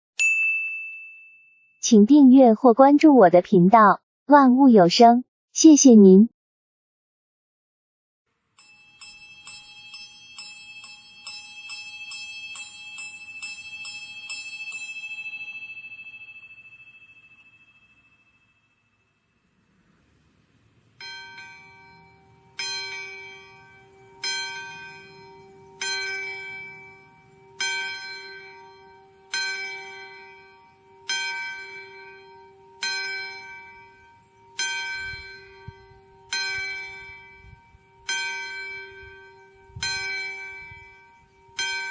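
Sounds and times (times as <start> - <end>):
high bell struck rapidly: 0.2 - 1.8, 8.6 - 19.3
bell tolling slowly: 8.6 - 19.5, 21.0 - 41.9.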